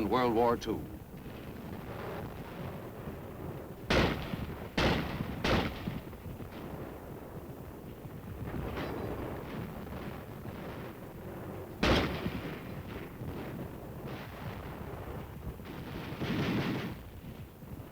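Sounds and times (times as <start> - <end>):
gunfire and artillery: 0.0 - 7.4, 11.8 - 17.2.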